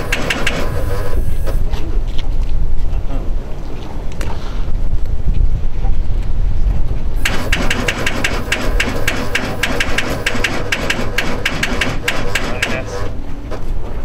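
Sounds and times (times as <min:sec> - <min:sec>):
engine starter cranking: 0:00.0 - 0:01.6, 0:07.2 - 0:13.0.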